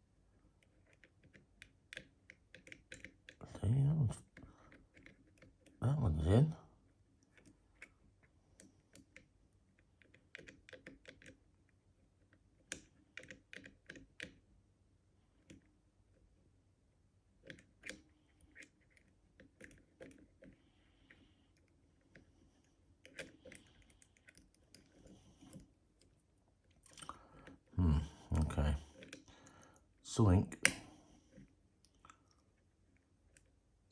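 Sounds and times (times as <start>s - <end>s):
lock picks clicking inside lock: 0.6s - 3.4s.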